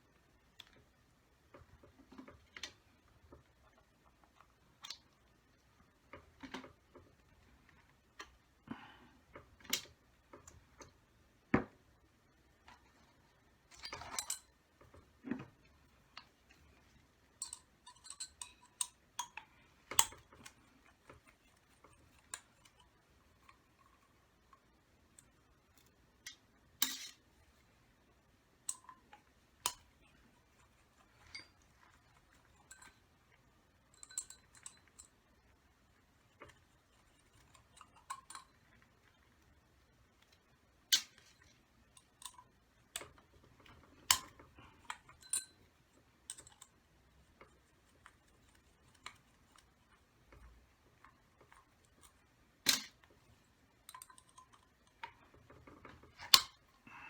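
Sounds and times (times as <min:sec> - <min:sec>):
small tools clicking and clinking: 0:17.4 - 0:24.0, 0:33.8 - 0:35.2, 0:40.9 - 0:46.8, 0:50.3 - 0:56.7.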